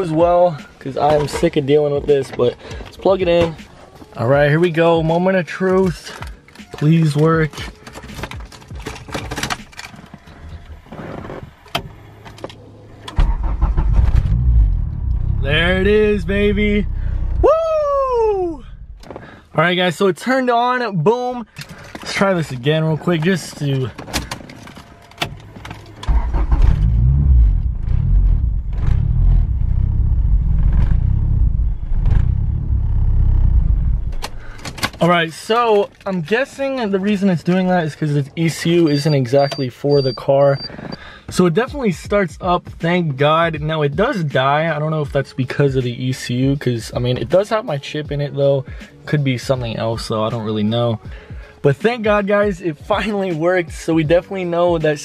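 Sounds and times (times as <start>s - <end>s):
car engine starting and running: 7.9s - 19.4s, 23.2s - 35.0s
engine starting with loud rumble: 13.1s - 15.9s, 26.0s - 34.6s.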